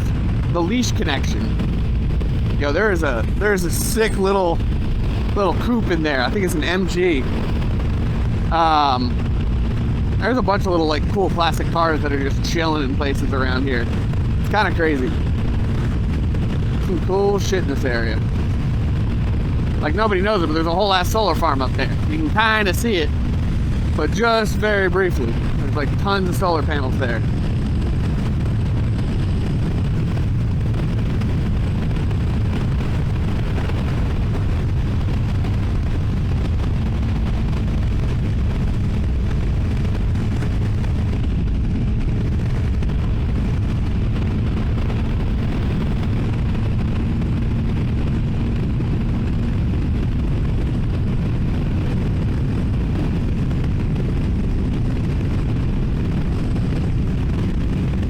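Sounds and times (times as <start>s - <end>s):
motorcycle engine cruising: 0.0s - 58.0s
wind rush: 0.0s - 58.0s.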